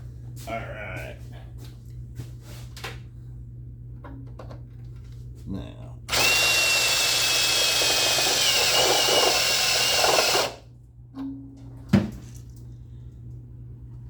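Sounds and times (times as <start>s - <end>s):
electric drill cutting steel: 6.1s - 10.6s.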